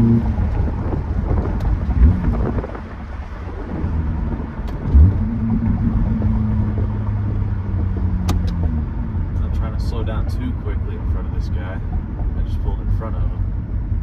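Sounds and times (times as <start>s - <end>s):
car engine hum from inside cabin: 0.0s - 14.0s
short low thumps: 0.0s - 14.0s.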